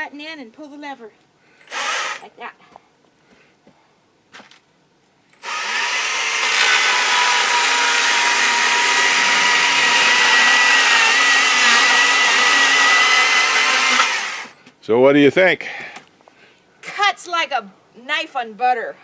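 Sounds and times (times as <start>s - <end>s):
battery chainsaw cutting board: 1.6s - 2.3s, 5.4s - 14.6s.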